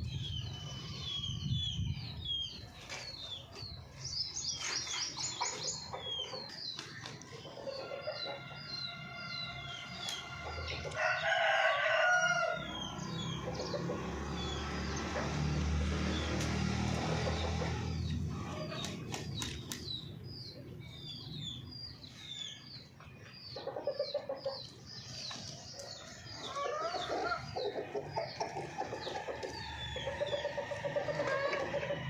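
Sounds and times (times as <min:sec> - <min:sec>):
chicks peeping: 0:00.0 - 0:32.0
hen clucking: 0:26.4 - 0:32.0.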